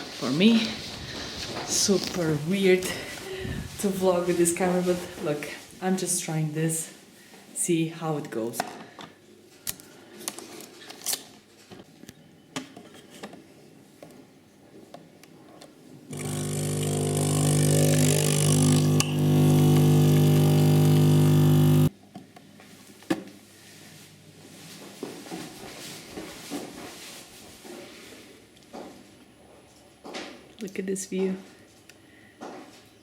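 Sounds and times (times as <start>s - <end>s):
coffee machine pump humming: 16.1s - 21.9s.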